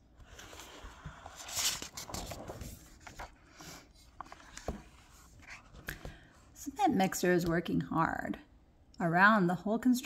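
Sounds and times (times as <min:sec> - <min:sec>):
paper page turning: 0:00.2 - 0:05.9.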